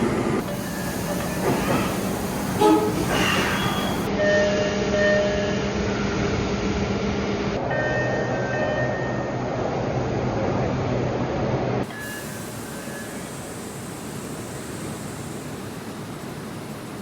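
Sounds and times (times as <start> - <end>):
subway door chime tones: 0.0 - 6.2, 7.6 - 9.6, 11.8 - 17.0
stopped train humming: 0.0 - 10.2, 11.8 - 17.0.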